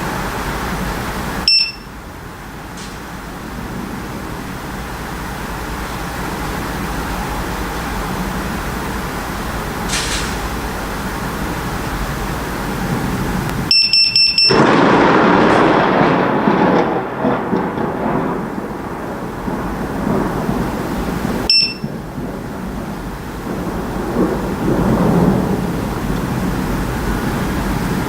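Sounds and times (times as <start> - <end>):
heavy rain: 0.0 - 28.0
thunder rumbling: 0.0 - 28.0
high electronic beeps: 1.5 - 1.9, 13.7 - 14.6, 21.5 - 21.9.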